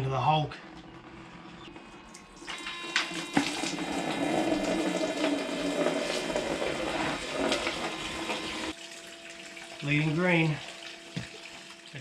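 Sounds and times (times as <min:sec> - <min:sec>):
coolant gushing and splashing: 0:02.5 - 0:12.0.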